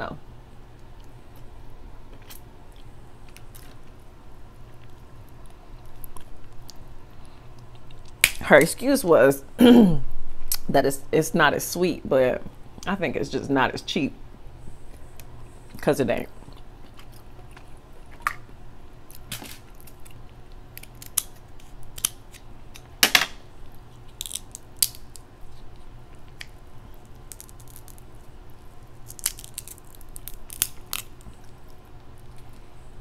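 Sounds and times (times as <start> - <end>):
crab shells cracking: 7.6 - 8.4, 18.1 - 32.6.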